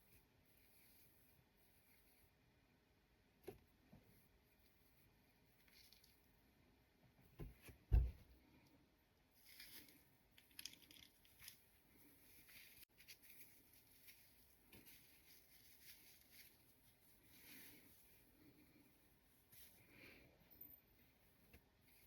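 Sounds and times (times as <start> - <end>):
faint rustling and ticks: 9.4 - 22.0.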